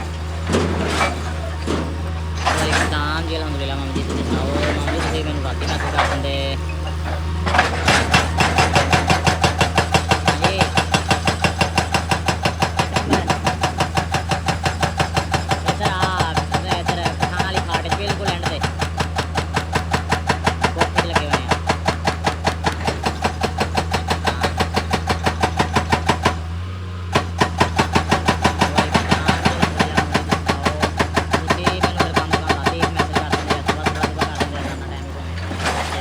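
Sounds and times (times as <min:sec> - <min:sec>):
heavy machine engine running: 0:00.0 - 0:36.0
rapid even hammering: 0:07.5 - 0:26.5, 0:27.1 - 0:36.0.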